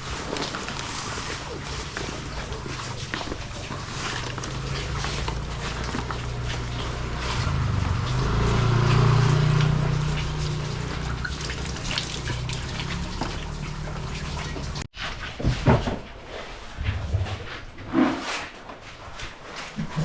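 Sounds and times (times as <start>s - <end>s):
water running and sloshing: 0.0s - 14.9s.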